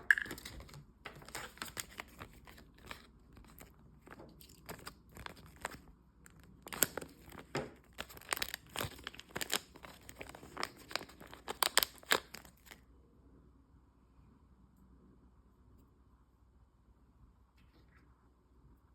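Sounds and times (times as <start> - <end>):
crinkling and clicking handling: 0.0 - 12.8.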